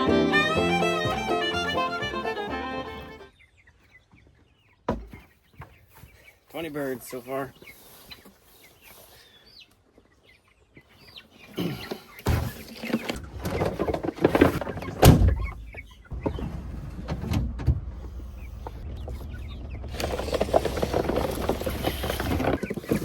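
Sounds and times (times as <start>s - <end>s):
chicks peeping: 0.0s - 16.5s, 18.0s - 23.0s
sharp thunk: 4.9s - 5.2s, 15.0s - 16.4s
clattering and knocking: 12.3s - 17.9s, 19.0s - 23.0s
steady low rumble: 16.1s - 22.1s.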